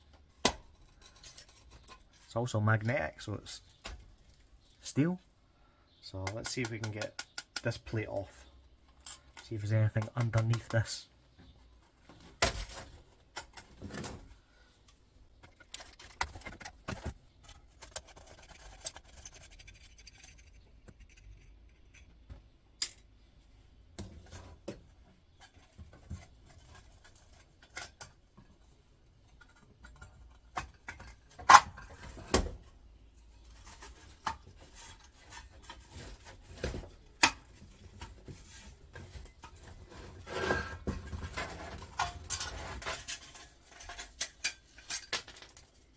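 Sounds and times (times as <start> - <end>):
metal clinks scrapes and knocks: 0.6 - 2.3, 8.9 - 10.6, 15.4 - 23.1, 29.2 - 32.2, 33.1 - 45.9.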